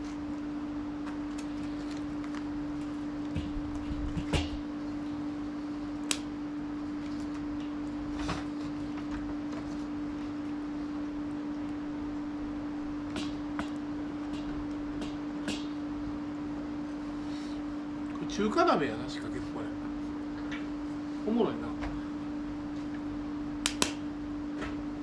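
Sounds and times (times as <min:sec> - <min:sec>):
wood fire crackling: 0:00.0 - 0:18.5, 0:22.0 - 0:24.2
steady low hum: 0:00.0 - 0:25.0
sharp pops from fire: 0:06.0 - 0:06.3, 0:13.0 - 0:15.8, 0:23.6 - 0:24.1.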